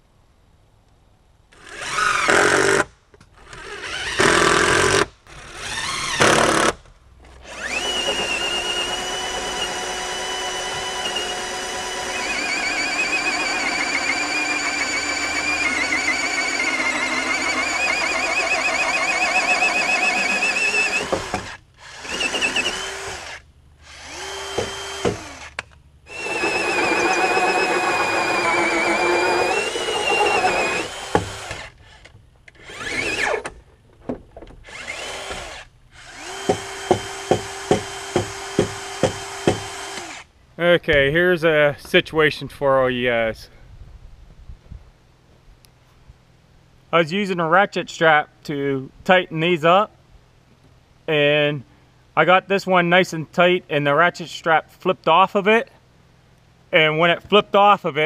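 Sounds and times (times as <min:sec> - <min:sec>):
power drill running: 0:03.4 - 0:06.8, 0:07.4 - 0:33.5, 0:34.6 - 0:40.3.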